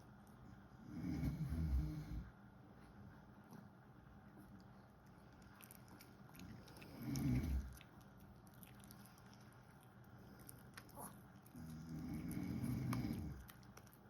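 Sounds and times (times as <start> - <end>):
pet snoring: 0.9 - 2.3, 6.8 - 7.7, 11.6 - 13.4.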